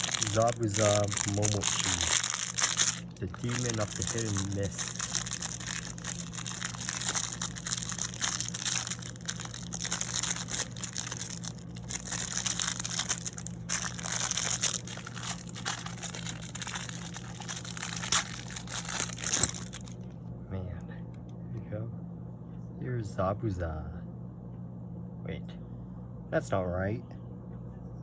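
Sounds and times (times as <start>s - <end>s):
plastic packaging crinkling: 0.0s - 20.0s
steady low hum: 0.0s - 28.0s.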